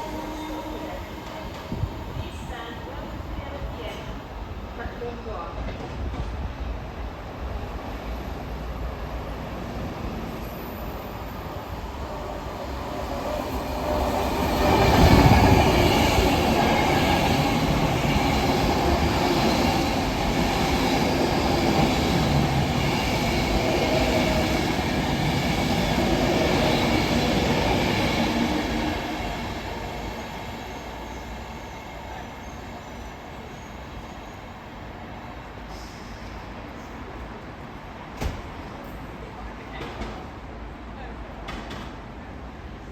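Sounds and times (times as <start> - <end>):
train rumbling past: 0.0 - 42.9.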